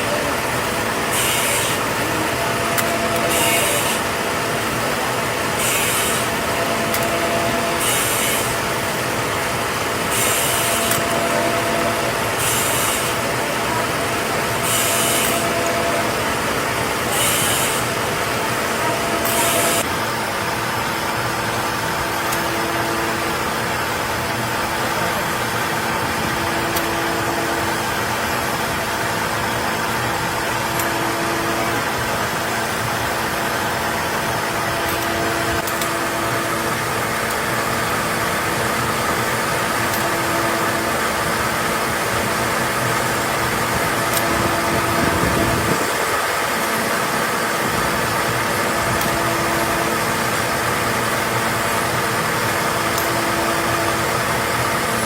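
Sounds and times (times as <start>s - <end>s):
factory machinery humming: 0.0s - 55.0s.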